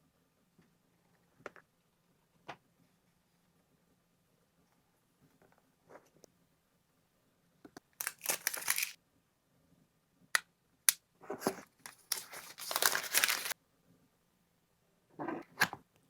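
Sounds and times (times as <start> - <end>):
packaging torn and crinkled: 8.0 - 9.0, 11.9 - 13.6.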